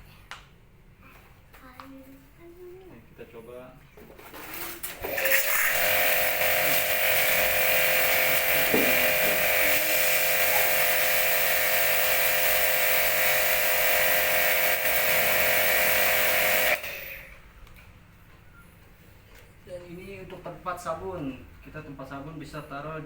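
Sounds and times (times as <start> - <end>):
pressure washer motor whining: 4.9 - 17.4.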